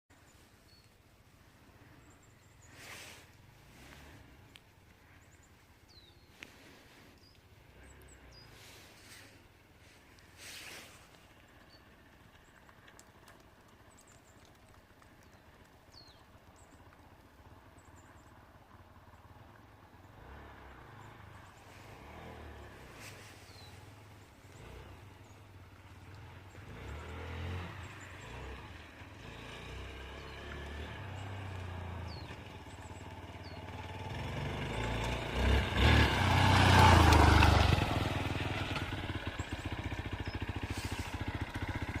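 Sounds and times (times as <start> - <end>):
dirt bike engine revving: 26.2 - 32.2, 33.4 - 42.0.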